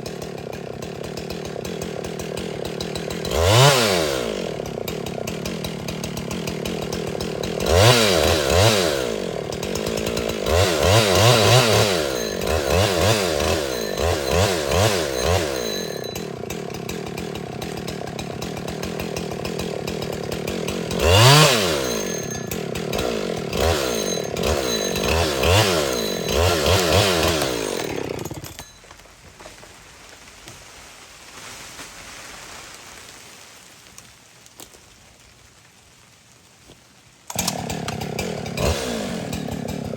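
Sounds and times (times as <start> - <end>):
chainsaw cutting wood: 0.0 - 30.6, 37.3 - 39.9.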